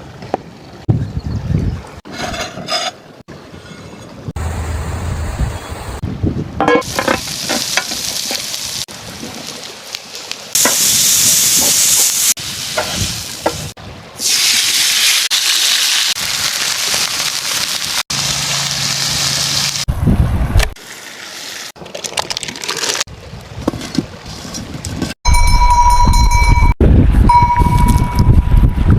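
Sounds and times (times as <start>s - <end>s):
food frying hiss: 6.8s - 19.9s.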